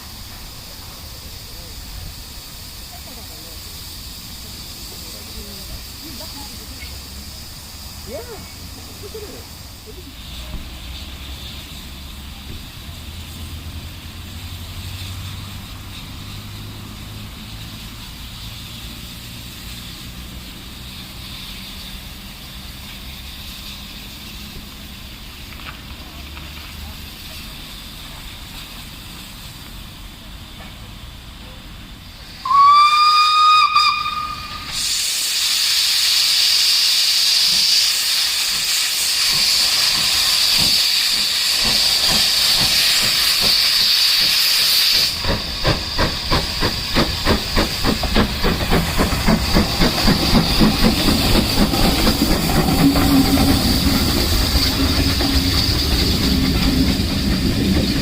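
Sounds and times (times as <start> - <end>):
steam hissing: 0.0 - 58.0
steam locomotive whistle: 32.4 - 35.3
locomotive exhaust beats: 36.1 - 58.0.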